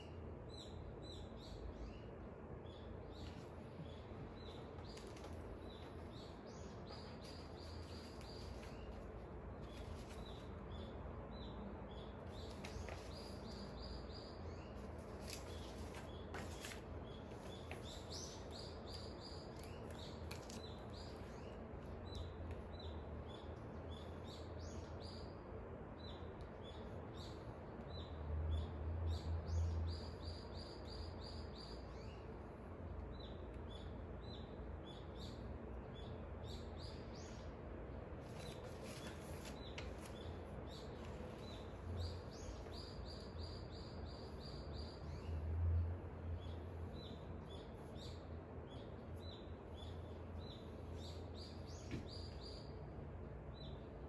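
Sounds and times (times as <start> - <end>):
small birds chirping and trilling: 0.0 - 54.0.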